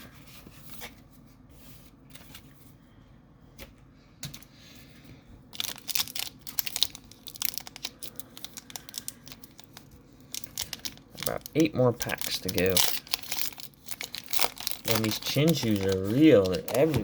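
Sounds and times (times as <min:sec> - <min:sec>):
foil wrapper tearing and crinkling: 0:05.6 - 0:17.0.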